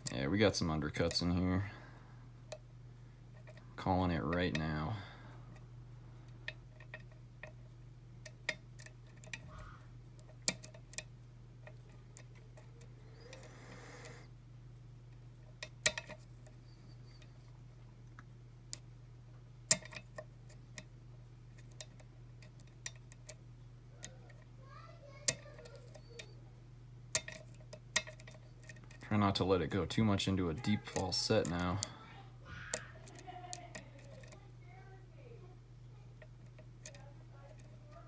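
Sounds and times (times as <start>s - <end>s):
low steady hum: 0.0s - 38.0s
lock pick clicking against pins: 8.2s - 14.2s, 19.7s - 20.9s, 21.5s - 23.4s, 27.1s - 29.1s, 32.6s - 34.4s, 36.2s - 38.0s.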